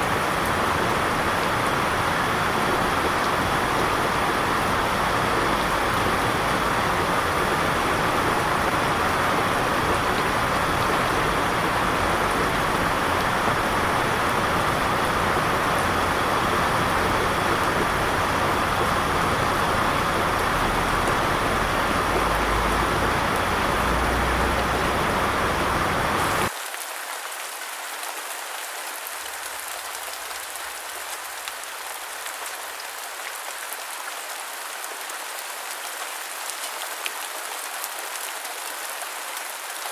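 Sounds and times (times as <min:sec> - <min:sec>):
heavy rain hiss: 0:00.0 - 0:26.6.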